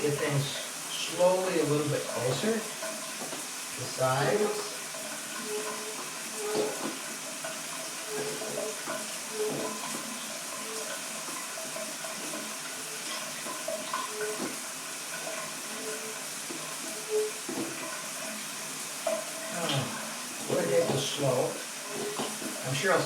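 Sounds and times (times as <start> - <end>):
shower water spraying: 0.0 - 23.0.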